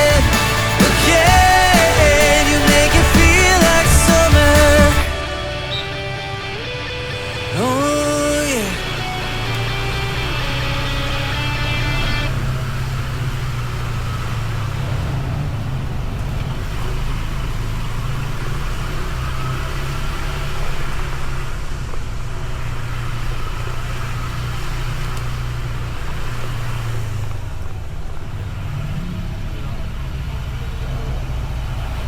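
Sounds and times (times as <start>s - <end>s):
road noise: 0.0s - 32.0s
scooter engine cruising: 0.0s - 32.0s.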